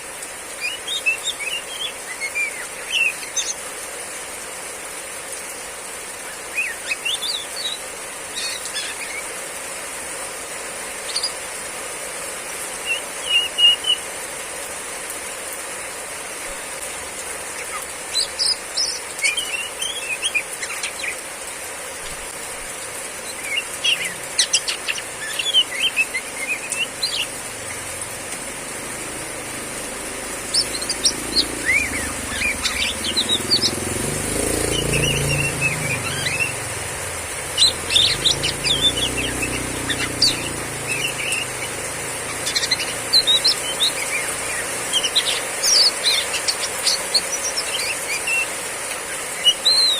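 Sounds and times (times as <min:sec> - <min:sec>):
heavy rain hiss: 0:00.0 - 0:49.9
bird chirps and whistled calls: 0:00.6 - 0:03.7, 0:06.3 - 0:09.3, 0:12.8 - 0:14.1, 0:17.6 - 0:21.2, 0:23.2 - 0:27.9, 0:30.3 - 0:49.9.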